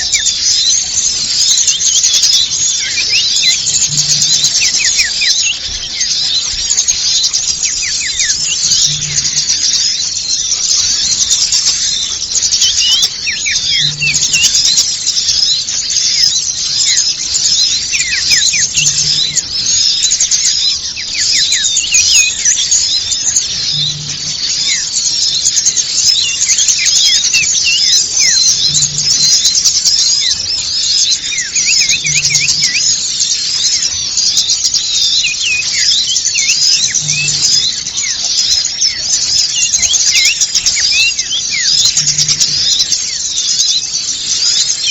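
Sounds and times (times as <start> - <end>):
songbirds chirping and twittering: 0.0 - 44.9.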